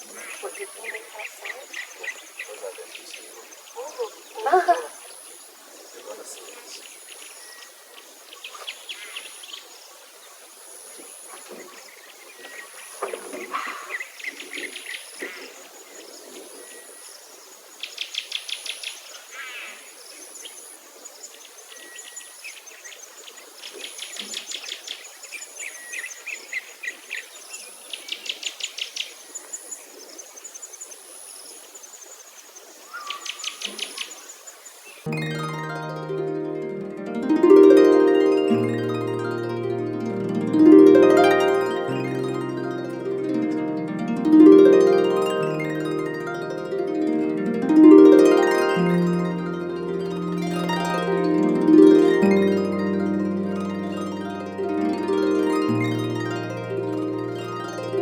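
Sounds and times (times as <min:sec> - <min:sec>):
chirping and high trills: 0:35.1 - 0:58.0
plucked harp-like music: 0:35.1 - 0:58.0.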